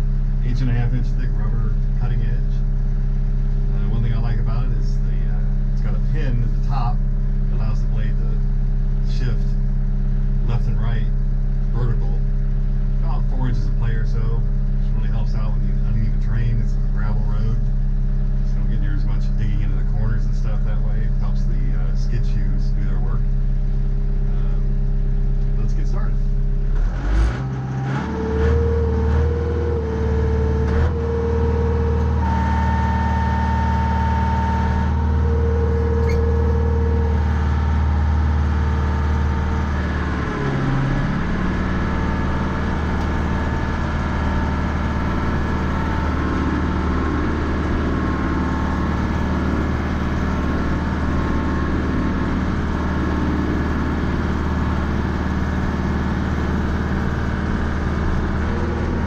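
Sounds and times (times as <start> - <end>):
tractor diesel engine running: 0.0 - 59.0
high whine: 27.8 - 59.0.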